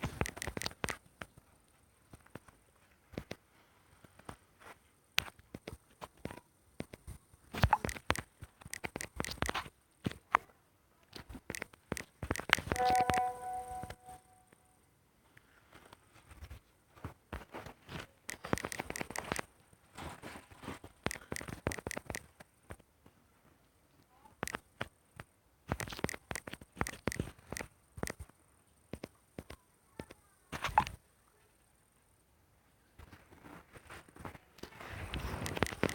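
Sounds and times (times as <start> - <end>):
quick irregular taps and clicks: 0.0 - 3.4, 5.2 - 14.1, 17.3 - 19.7, 20.6 - 23.2, 24.4 - 31.0, 34.6 - 35.9
clicks and taps on phone: 11.4 - 14.3, 35.4 - 35.9
short pitched tone: 12.7 - 14.5.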